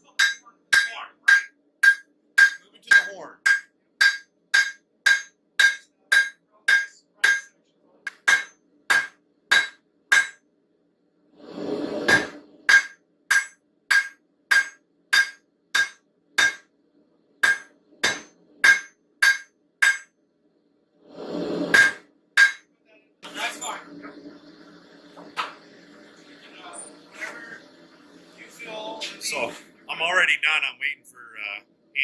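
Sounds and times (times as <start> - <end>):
hammer striking hot metal on anvil: 0.1 - 7.5, 8.1 - 10.4, 12.1 - 16.7, 17.4 - 20.1, 21.7 - 22.7.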